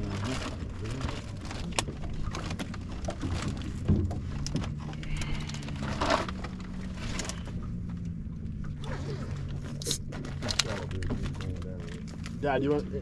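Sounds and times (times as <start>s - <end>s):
boat motor humming: 0.0s - 13.0s
knocks and clatter on board: 0.2s - 5.0s.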